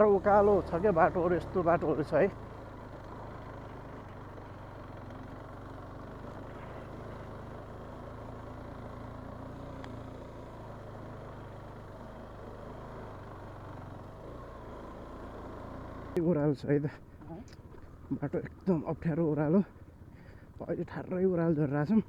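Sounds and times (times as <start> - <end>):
motorcycle engine running at low revs: 0.0 - 16.2.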